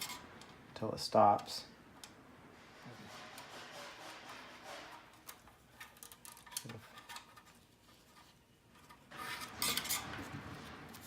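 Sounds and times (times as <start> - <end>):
rubbing and scraping: 2.6 - 11.0.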